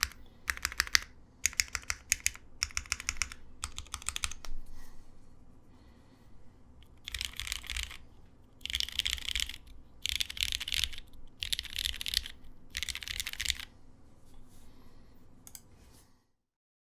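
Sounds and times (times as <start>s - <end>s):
mechanical keyboard key clacks: 0.0s - 4.5s, 7.0s - 8.0s, 8.6s - 13.7s.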